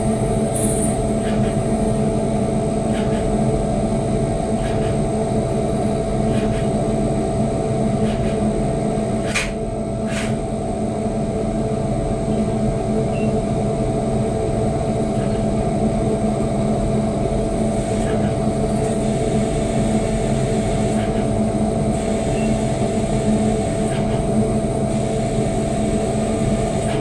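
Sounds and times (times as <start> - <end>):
milling machine humming and whining: 0.0 - 27.0.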